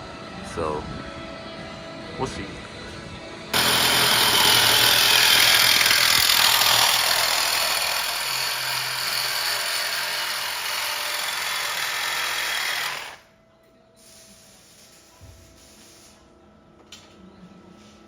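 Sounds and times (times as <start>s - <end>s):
power tool cutting steel pipe: 3.6s - 13.2s.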